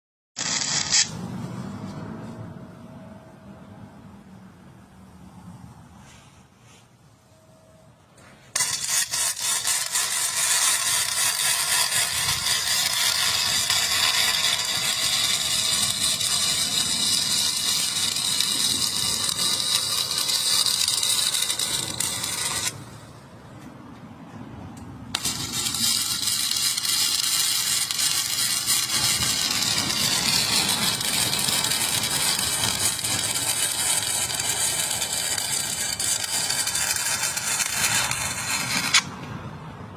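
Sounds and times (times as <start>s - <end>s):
arc welding crackle: 0.4s - 1.4s, 8.5s - 23.2s, 25.1s - 39.2s.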